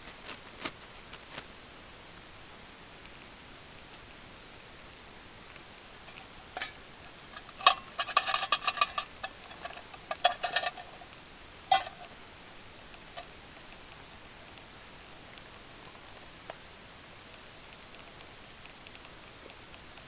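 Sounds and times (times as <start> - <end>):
faint steady hiss: 0.0 - 20.0
metal clinking and rattling: 6.1 - 11.1, 11.7 - 12.1.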